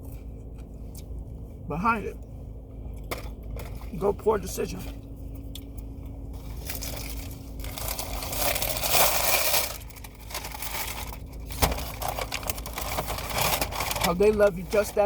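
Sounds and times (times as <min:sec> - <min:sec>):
food wrapping crinkling: 0:06.4 - 0:14.7.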